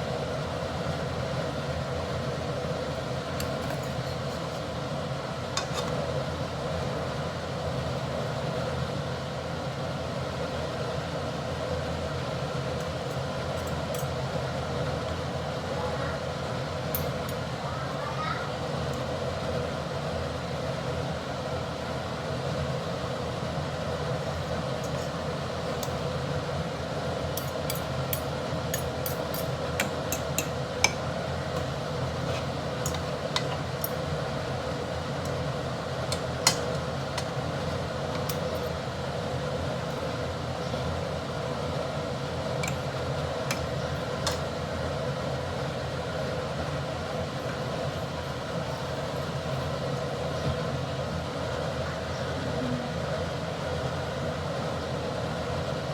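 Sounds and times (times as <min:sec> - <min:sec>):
steady background hum: 0:00.0 - 0:55.9
utensils clinking against dishes: 0:03.4 - 0:04.5, 0:27.4 - 0:31.0, 0:32.2 - 0:34.0.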